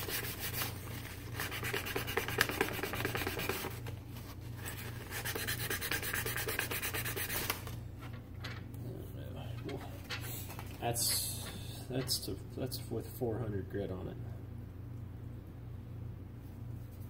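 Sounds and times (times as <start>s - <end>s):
hand sanding wood: 0.0s - 3.9s, 4.6s - 7.6s.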